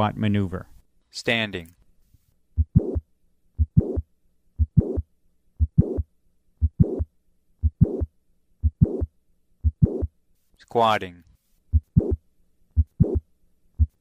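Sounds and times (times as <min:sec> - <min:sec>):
heart click: 0:02.6 - 0:03.0, 0:03.6 - 0:04.0, 0:04.6 - 0:05.0, 0:05.6 - 0:06.0, 0:06.6 - 0:10.1, 0:11.7 - 0:12.2, 0:12.8 - 0:13.2, 0:13.8 - 0:14.0
heart murmur: 0:02.6 - 0:03.0, 0:03.6 - 0:04.0, 0:04.6 - 0:05.0, 0:05.6 - 0:06.0, 0:06.6 - 0:10.1, 0:11.7 - 0:12.2, 0:12.8 - 0:13.2, 0:13.8 - 0:14.0
heartbeat: 0:02.6 - 0:03.0, 0:03.6 - 0:04.0, 0:04.6 - 0:05.0, 0:05.6 - 0:10.1, 0:11.7 - 0:12.2, 0:12.8 - 0:13.2, 0:13.8 - 0:14.0.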